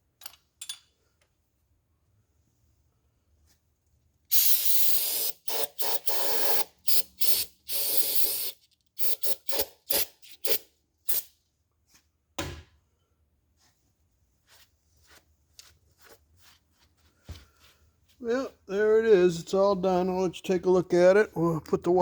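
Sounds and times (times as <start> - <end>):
spray nozzle hissing: 4.3 - 11.2.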